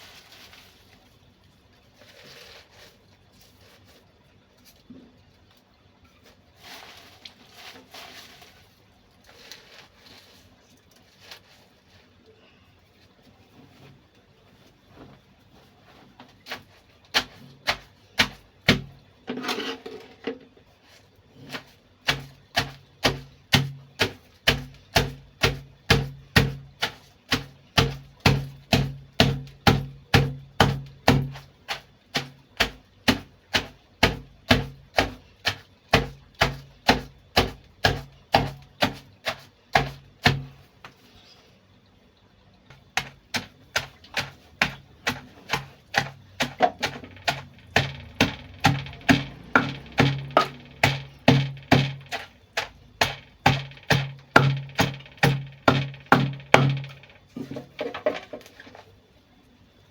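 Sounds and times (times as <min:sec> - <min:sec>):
pestle pounding in mortar: 0:17.1 - 0:19.0, 0:22.0 - 0:40.6, 0:43.0 - 0:57.1.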